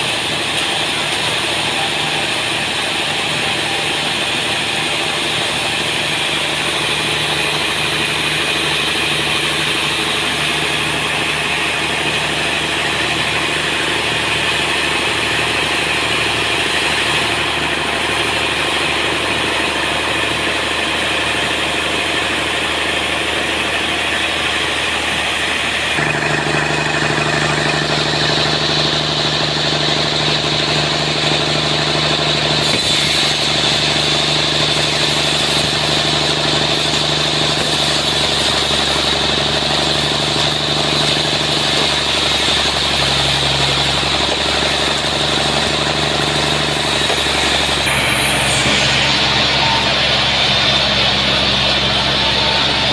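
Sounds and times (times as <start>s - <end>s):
sawmill machine hum: 0.0s - 52.9s
saw cutting hiss: 27.2s - 52.9s.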